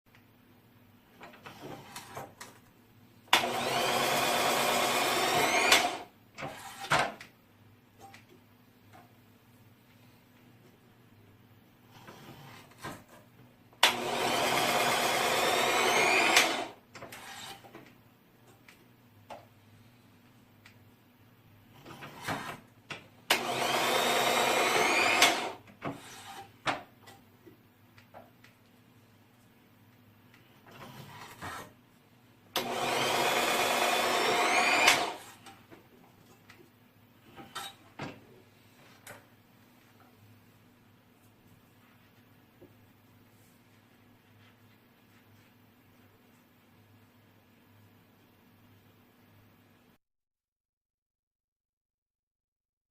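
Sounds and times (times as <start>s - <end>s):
electric motor whining: 3.4s - 6.0s, 13.9s - 16.7s, 23.4s - 25.6s, 32.6s - 35.3s.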